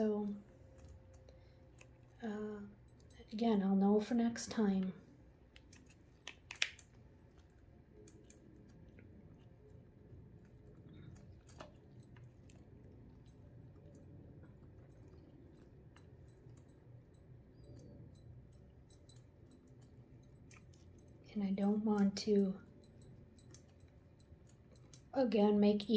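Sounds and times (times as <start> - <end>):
soft clicks and ticks: 4.5 - 25.2.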